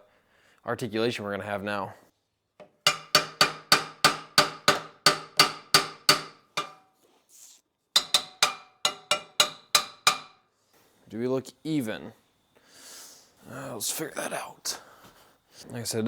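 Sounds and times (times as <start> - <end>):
hammer striking metal: 2.8 - 6.9, 8.0 - 10.4.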